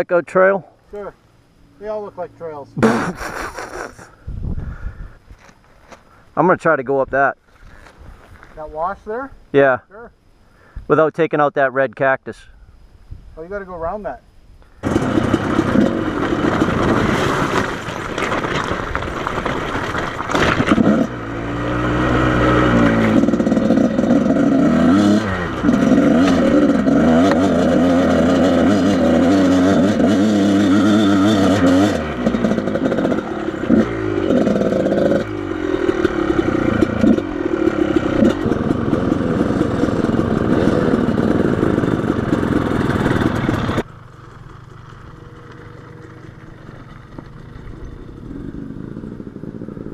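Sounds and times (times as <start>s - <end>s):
motorcycle engine revving: 14.8s - 49.9s
bike clattering over rocks: 16.3s - 21.0s.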